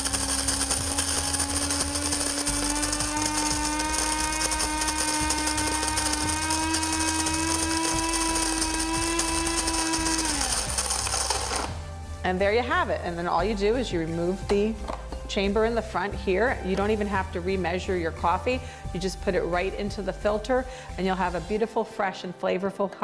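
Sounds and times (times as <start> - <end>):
coffee grinder motor whine: 0.0 - 12.0.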